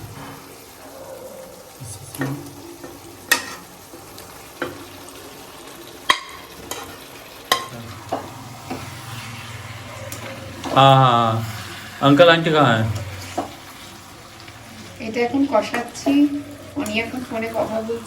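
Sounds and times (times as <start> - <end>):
spatula scraping a pan: 0.0 - 0.8, 6.1 - 18.0
chicken sizzling in a pan: 0.0 - 18.0.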